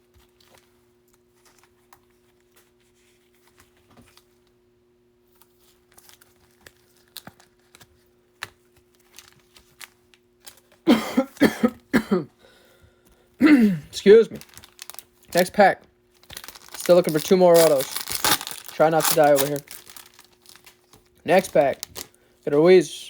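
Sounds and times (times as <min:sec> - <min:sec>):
cards and foil wrappers rustling: 0:05.3 - 0:10.8, 0:14.0 - 0:23.0.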